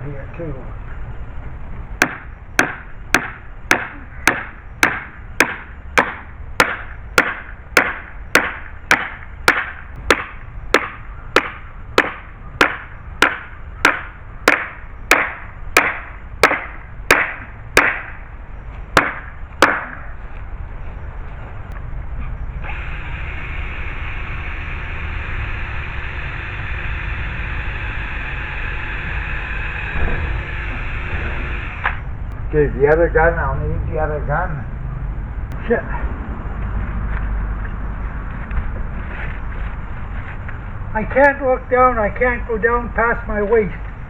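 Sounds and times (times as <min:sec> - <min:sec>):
hammer blows: 0:02.0 - 0:20.2, 0:21.7 - 0:32.1.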